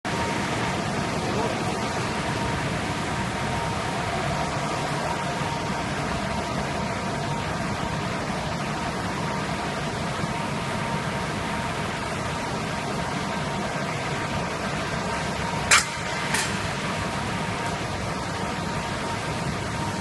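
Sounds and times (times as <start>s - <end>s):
faint steady whine: 0.1s - 20.0s.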